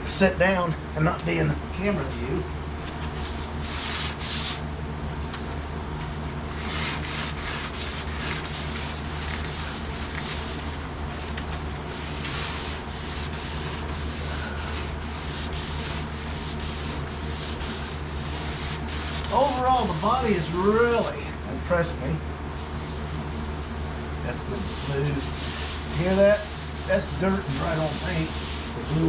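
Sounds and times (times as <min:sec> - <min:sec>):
exhaust fan humming: 0:00.0 - 0:29.0
hand sanding sheet metal: 0:03.2 - 0:04.6, 0:06.5 - 0:10.9, 0:11.9 - 0:21.1, 0:22.5 - 0:29.0.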